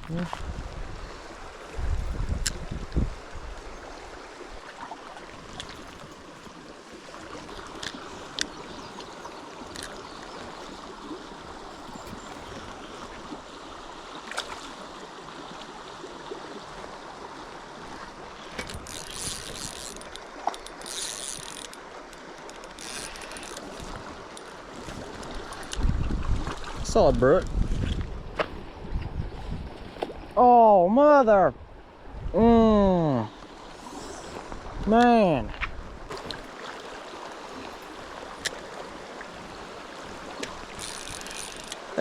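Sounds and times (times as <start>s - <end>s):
stream water running: 0.0s - 42.0s
fishing reel cranking: 18.6s - 21.8s, 22.4s - 24.4s, 40.7s - 41.8s.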